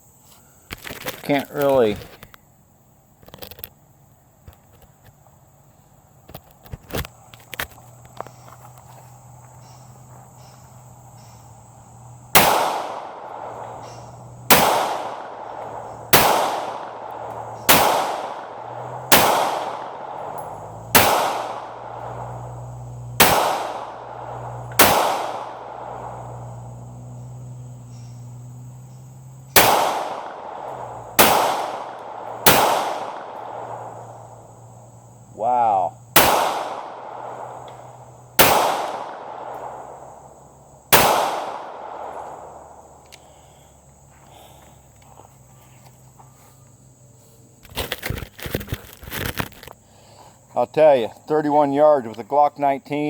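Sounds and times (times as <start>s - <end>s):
pistol shots with echo: 12.3s - 26.7s, 29.5s - 34.4s, 36.2s - 40.2s, 40.9s - 42.8s.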